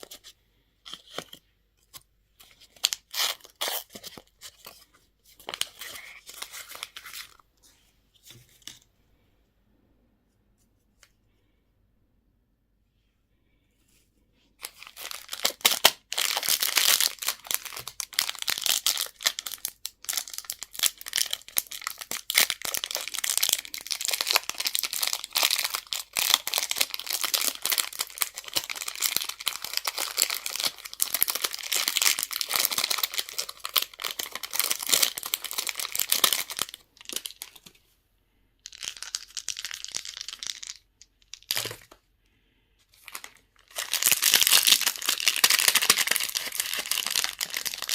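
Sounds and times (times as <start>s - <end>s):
wrapper crinkling and tearing: 14.6s - 37.7s, 38.7s - 41.9s, 43.0s - 47.9s.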